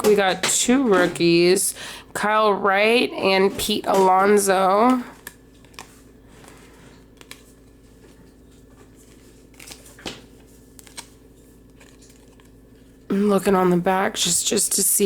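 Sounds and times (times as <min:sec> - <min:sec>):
steady low hum: 0:00.0 - 0:15.0
trading cards being handled: 0:03.5 - 0:13.0.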